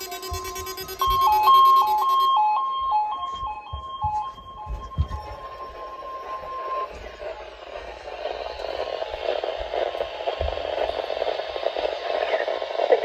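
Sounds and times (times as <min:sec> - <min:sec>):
warning alarm tone: 0:00.0 - 0:07.2
radio static hiss: 0:04.7 - 0:13.0.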